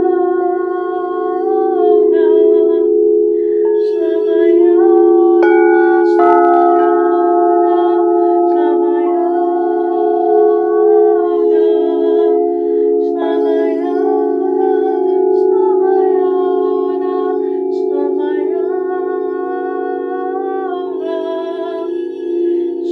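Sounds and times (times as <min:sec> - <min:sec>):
person singing long gliding tones: 0:00.0 - 0:22.9
singing bowls ringing drone: 0:00.0 - 0:22.9.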